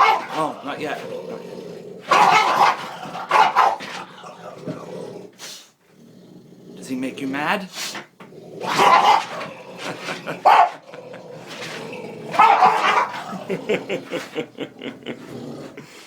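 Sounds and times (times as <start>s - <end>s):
dog barking: 0.0s - 0.5s, 2.1s - 3.9s, 8.7s - 9.4s, 10.4s - 10.9s, 12.4s - 13.2s.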